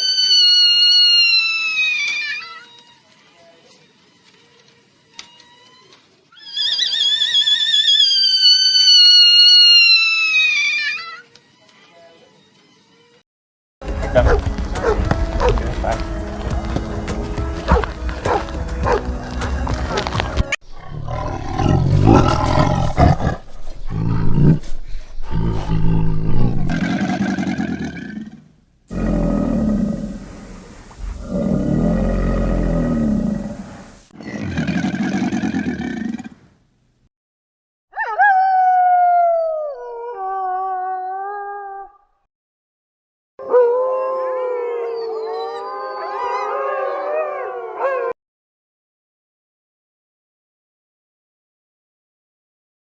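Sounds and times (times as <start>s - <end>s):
wolves howling in chorus: 14.2s - 15.8s, 17.6s - 20.2s, 43.4s - 48.2s
big cat roaring: 19.6s - 30.4s, 31.0s - 36.4s.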